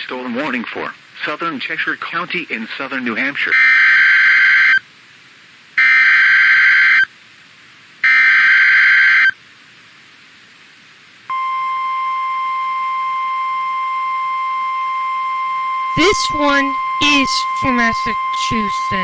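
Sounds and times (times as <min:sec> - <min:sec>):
steady attention tone: 0:11.3 - 0:19.0.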